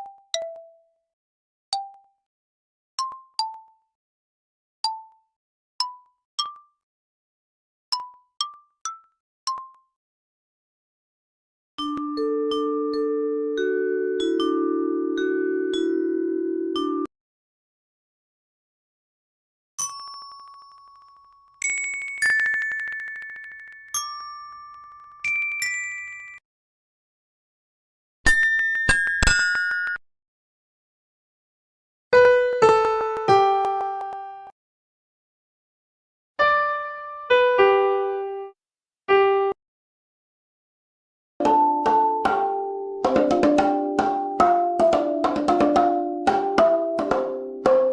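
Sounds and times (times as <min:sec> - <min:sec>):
bell-like chime tones: 0:19.8 - 0:26.4, 0:28.3 - 0:30.0
electronic keyboard jingles: 0:20.2 - 0:26.2.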